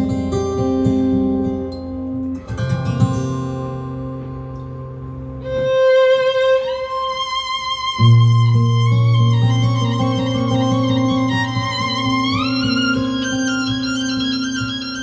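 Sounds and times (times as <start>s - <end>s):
plucked guitar: 0.0s - 15.0s
held string notes: 1.7s - 15.0s
solo violin: 5.4s - 15.0s.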